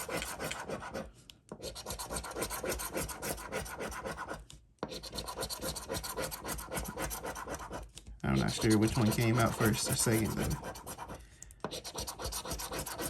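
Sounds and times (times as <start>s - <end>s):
lottery ticket being scratched: 0.0s - 1.0s, 1.7s - 13.0s.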